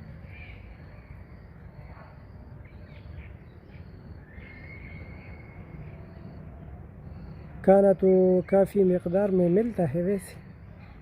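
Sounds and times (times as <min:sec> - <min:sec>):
faint bird calls: 0:00.2 - 0:11.0.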